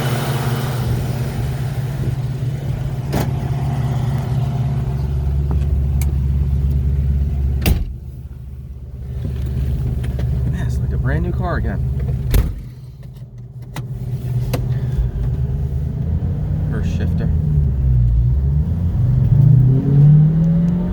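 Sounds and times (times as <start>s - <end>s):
car engine low note: 0.0s - 20.9s.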